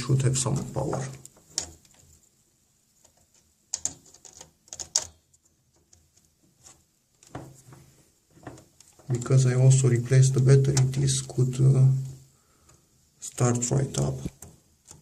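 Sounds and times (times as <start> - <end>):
clicks and knocks of handling: 3.0 - 9.3.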